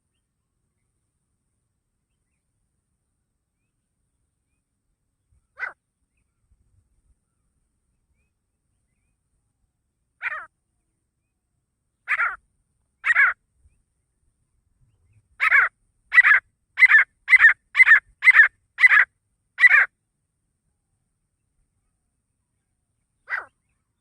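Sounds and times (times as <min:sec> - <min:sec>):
francolin calling with harsh notes: 0:13.0 - 0:13.4, 0:15.4 - 0:19.9.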